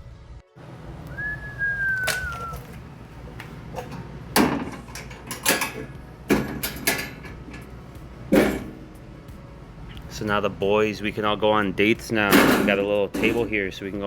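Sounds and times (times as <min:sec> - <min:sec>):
brief falling squeak: 0:01.2 - 0:02.6.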